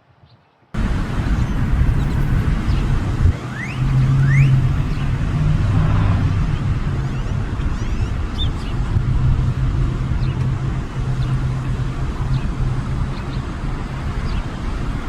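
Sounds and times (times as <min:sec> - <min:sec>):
vehicle engine running: 0:00.8 - 0:15.0
bird chirps: 0:01.2 - 0:05.2.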